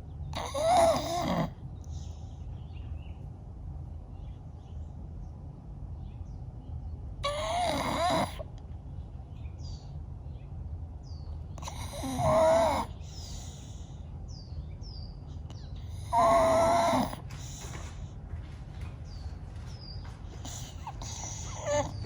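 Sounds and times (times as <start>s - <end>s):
dog snoring: 0.3s - 1.6s, 7.2s - 8.5s, 11.6s - 13.8s, 15.8s - 18.0s, 20.4s - 22.0s
dog breathing noisily: 0.4s - 2.5s, 11.6s - 14.2s, 15.8s - 22.0s.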